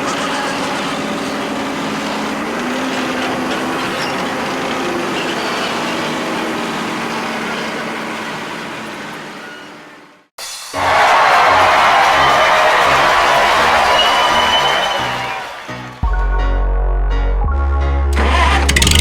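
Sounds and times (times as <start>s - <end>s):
vehicle engine running: 0.0s - 10.2s, 18.1s - 19.0s.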